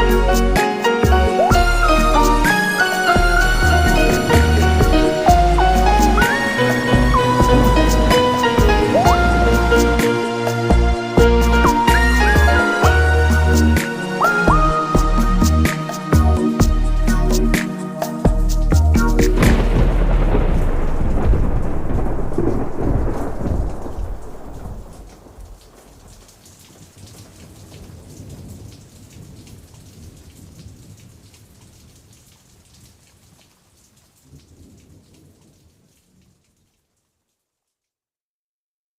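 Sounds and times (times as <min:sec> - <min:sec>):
steady rain: 0:00.0 - 0:37.9
thunder rolling: 0:01.3 - 0:17.6, 0:18.3 - 0:26.3.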